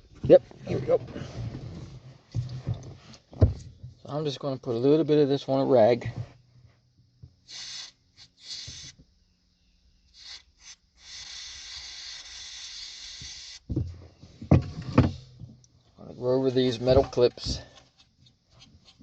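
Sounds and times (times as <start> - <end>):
aerosol can spraying: 7.5 - 9.0, 10.2 - 13.7.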